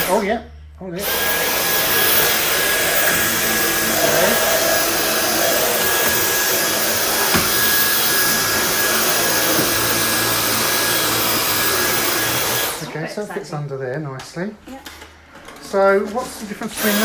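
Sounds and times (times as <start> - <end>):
vacuum cleaner running: 1.0 - 13.3, 16.7 - 17.0.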